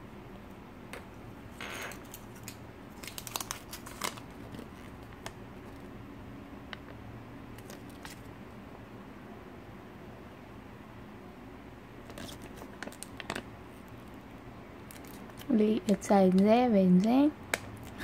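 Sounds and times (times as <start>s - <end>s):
wrapping rustle: 2.0s - 5.8s.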